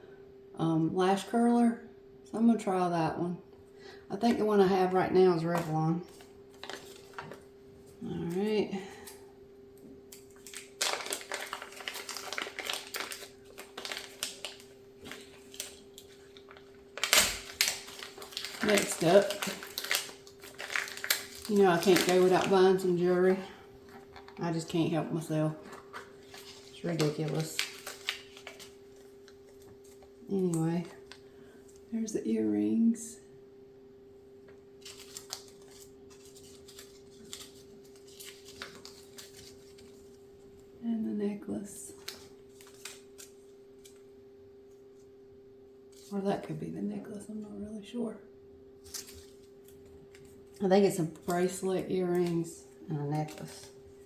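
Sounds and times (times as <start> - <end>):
steady low hum: 0.0 - 54.0
packaging crinkling and rustling: 5.4 - 8.6, 10.1 - 31.3, 34.8 - 40.2, 41.9 - 44.1, 48.8 - 54.0.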